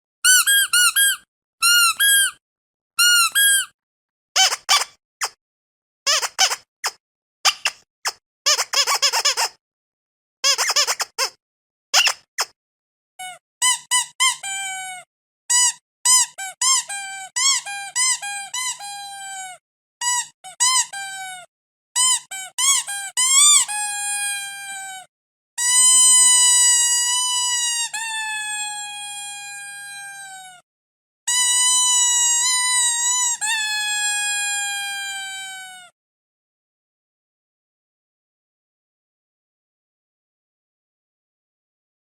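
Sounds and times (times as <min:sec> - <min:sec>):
squeaky dog toy squeaking: 0:00.2 - 0:02.4, 0:03.0 - 0:03.7, 0:04.4 - 0:05.4, 0:06.1 - 0:09.6, 0:10.4 - 0:11.4, 0:12.0 - 0:12.5, 0:13.2 - 0:30.6, 0:31.3 - 0:35.9.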